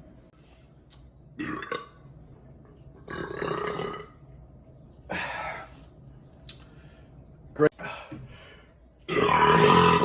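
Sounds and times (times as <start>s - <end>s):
man burping: 9.1s - 10.0s.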